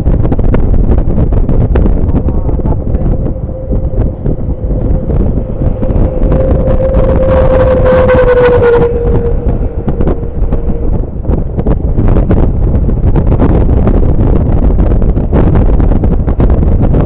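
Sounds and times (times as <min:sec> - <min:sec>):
bus engine rumbling: 0:00.0 - 0:16.4
steady whine: 0:00.5 - 0:14.4.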